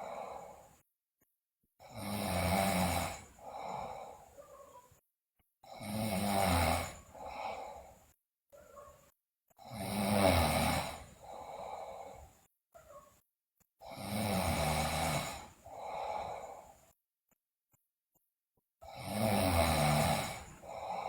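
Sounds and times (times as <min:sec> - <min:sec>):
girl snoring loudly: 0:01.8 - 0:04.4, 0:05.6 - 0:07.8, 0:09.6 - 0:12.3, 0:13.8 - 0:16.6, 0:18.8 - 0:21.0.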